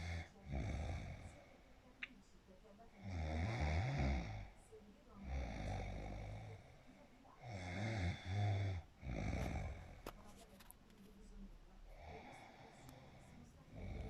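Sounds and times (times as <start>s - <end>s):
loud rattling snore: 3.0s - 4.5s, 7.4s - 10.0s, 13.7s - 14.0s
soft breath: 11.8s - 14.0s.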